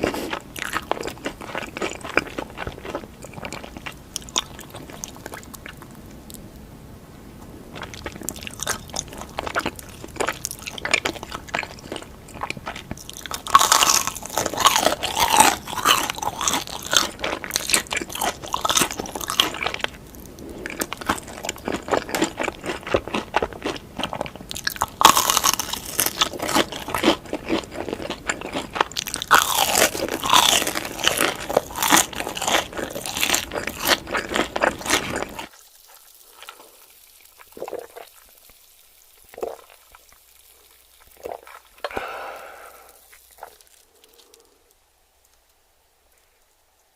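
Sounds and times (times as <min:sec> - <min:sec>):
crunchy snack chewing: 0:00.0 - 0:06.4, 0:07.8 - 0:38.4, 0:39.2 - 0:45.5.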